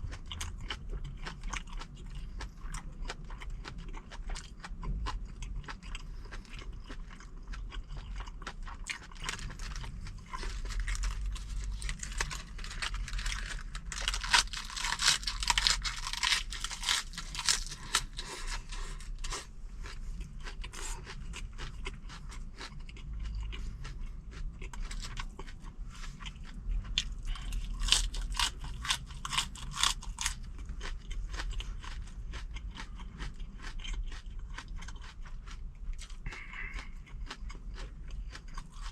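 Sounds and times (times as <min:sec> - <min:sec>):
chewing and crunching food: 0:00.0 - 0:38.9.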